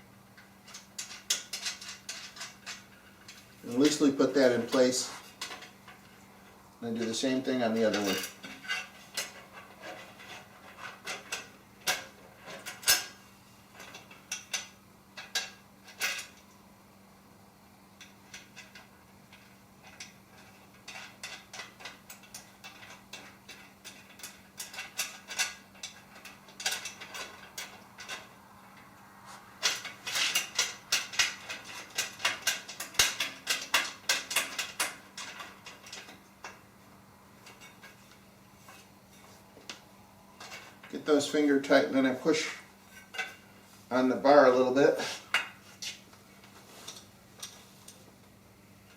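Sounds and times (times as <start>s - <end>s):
metal hardware clinking: 0.4s - 6.2s, 7.0s - 16.5s, 18.0s - 29.0s, 29.6s - 36.6s, 37.4s - 39.8s, 40.4s - 43.5s.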